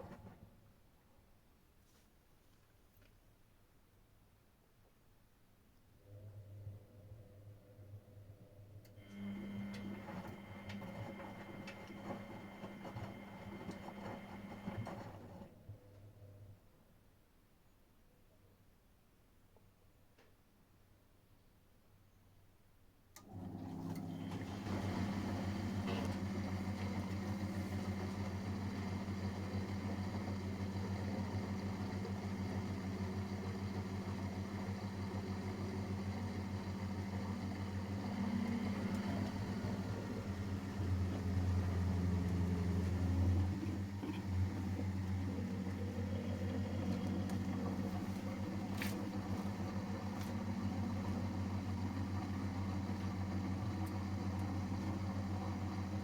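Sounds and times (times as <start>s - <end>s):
washing machine humming: 7.8s - 16.3s, 23.2s - 56.0s.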